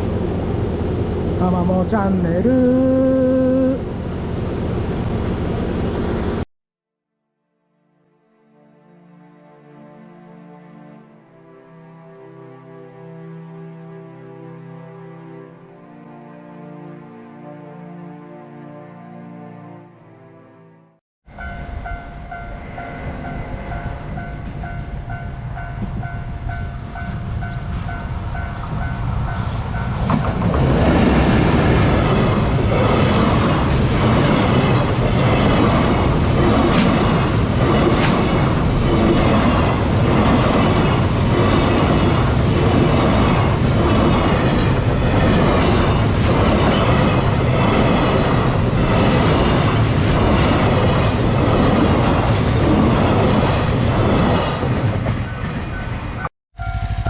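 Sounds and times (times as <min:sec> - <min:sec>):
freight train rumble: 0:00.0 - 0:06.5, 0:21.3 - 0:57.0.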